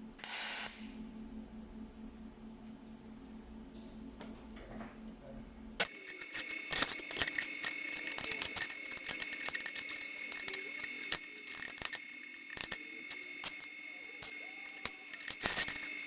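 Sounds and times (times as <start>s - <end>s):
welding arc whine: 0.0s - 2.4s, 5.6s - 16.0s
welding arc crackling: 0.2s - 1.0s, 5.8s - 16.0s.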